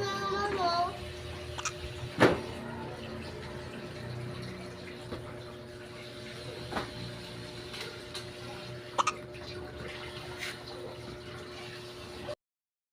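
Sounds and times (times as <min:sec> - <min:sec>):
baby hiccuping: 0:01.6 - 0:01.8, 0:09.0 - 0:09.2.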